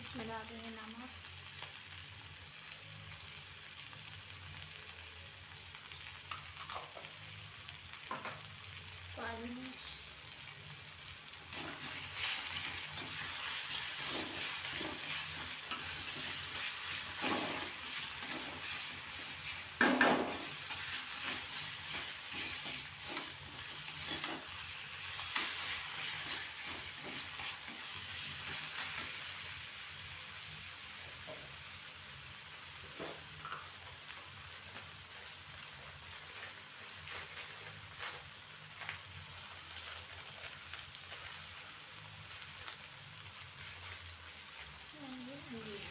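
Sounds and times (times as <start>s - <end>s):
food sizzling in a pan: 0.0s - 45.9s
spoon stirring and scraping pan: 11.5s - 29.5s
spoon knocking against pan: 19.8s - 20.4s.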